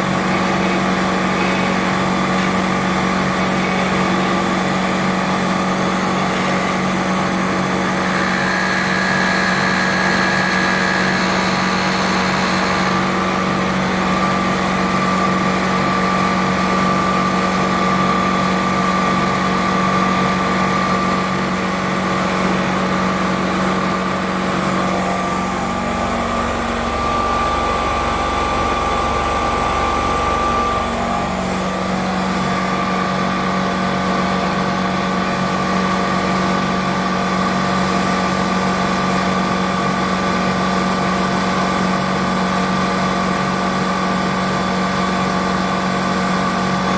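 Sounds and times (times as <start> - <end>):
milling machine motor hum: 0.0 - 34.2.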